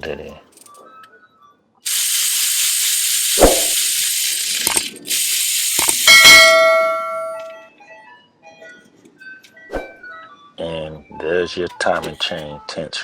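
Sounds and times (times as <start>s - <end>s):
air tool hissing: 1.8s - 6.2s
metal part clanging and ringing: 5.8s - 7.7s.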